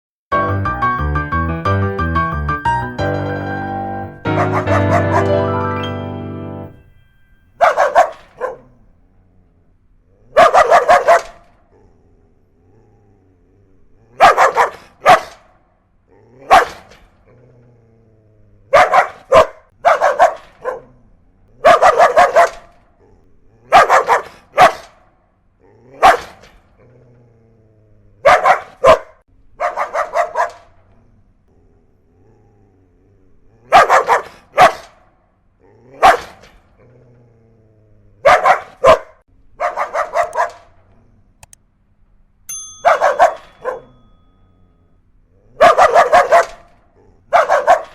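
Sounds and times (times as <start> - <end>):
dog barking aggressively: 4.4 - 5.4, 7.6 - 8.7, 10.3 - 11.5, 14.2 - 15.5, 16.5 - 16.9, 18.7 - 20.9, 21.6 - 22.7, 23.7 - 25.0, 26.0 - 26.4, 28.2 - 30.7, 33.7 - 35.0, 36.0 - 36.4, 38.2 - 40.7, 42.8 - 44.0, 45.6 - 46.7, 47.3 - 47.9.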